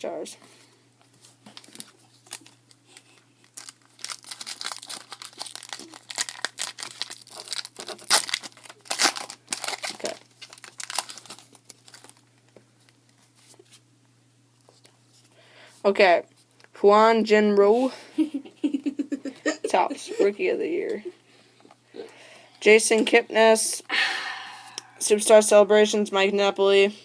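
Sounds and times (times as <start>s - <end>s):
foil wrapper crinkling and tearing: 1.4s - 12.3s.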